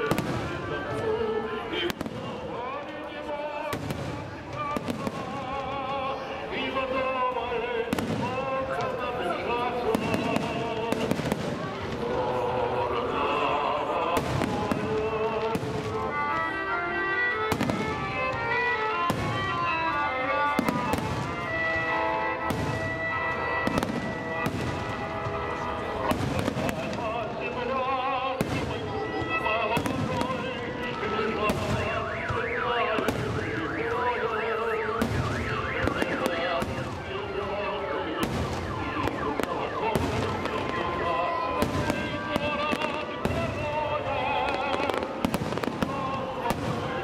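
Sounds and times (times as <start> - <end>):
fireworks bangs: 0.0 - 16.6, 17.4 - 47.0
music playing: 12.0 - 47.0
car alarm warbling: 30.1 - 43.2.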